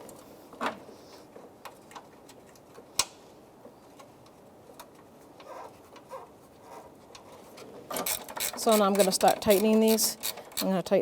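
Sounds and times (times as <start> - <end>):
tools clicking and tapping: 8.0 - 10.7.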